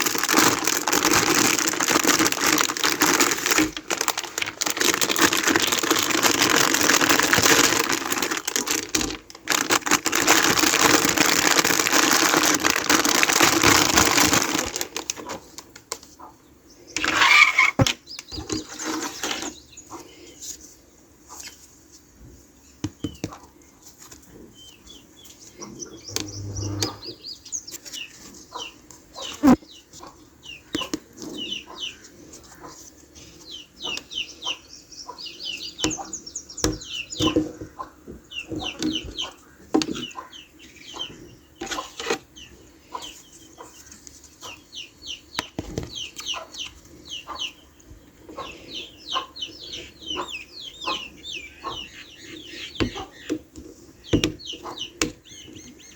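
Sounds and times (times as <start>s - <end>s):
plastic packaging crinkling: 0.0s - 15.9s, 17.0s - 17.9s.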